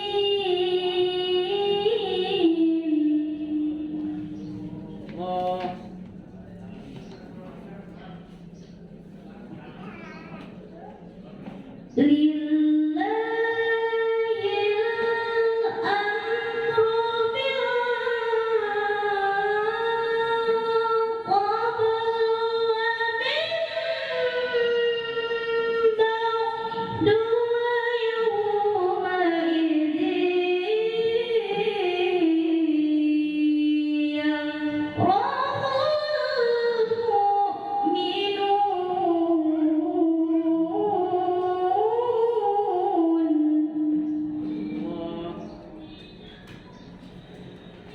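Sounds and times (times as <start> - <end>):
girl reciting melodically: 9.8 - 10.6, 11.9 - 46.8.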